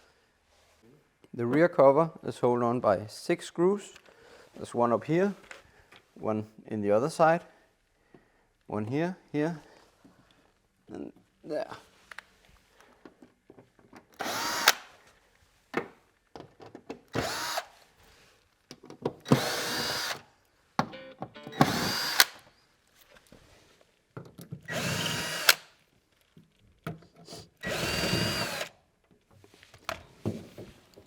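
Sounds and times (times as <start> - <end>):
power drill whirring: 14.2 - 15.0, 17.1 - 17.8, 19.2 - 20.2, 21.5 - 22.5, 24.7 - 25.7, 27.6 - 28.8.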